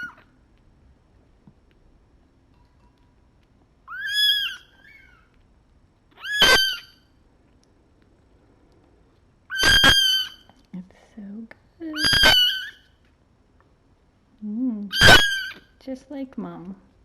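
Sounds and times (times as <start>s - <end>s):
kitten meowing: 9.5s - 10.4s, 12.0s - 12.8s, 14.9s - 15.6s.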